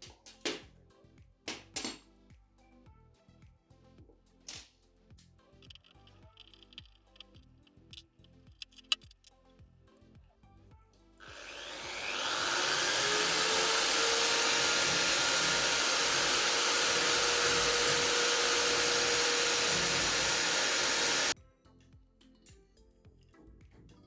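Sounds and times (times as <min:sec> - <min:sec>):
small electric motor running: 0:11.2 - 0:21.4.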